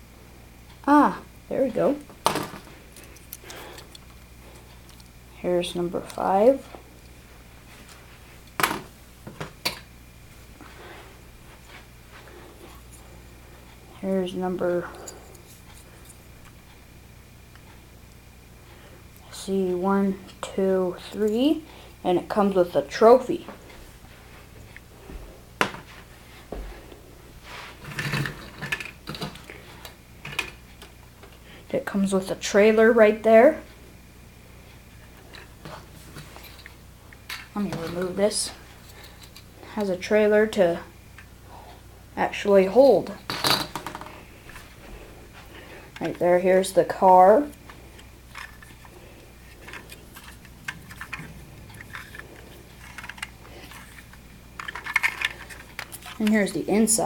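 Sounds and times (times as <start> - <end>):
plastic pieces rattling: 49.5 - 56.5
plastic pieces clicking: 49.6 - 56.4.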